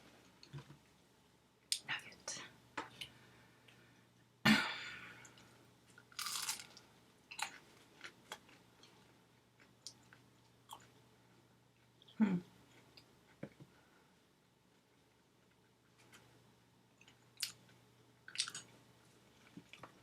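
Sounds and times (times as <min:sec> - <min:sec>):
person chewing crunchy food: 0:06.0 - 0:09.0, 0:18.3 - 0:18.7.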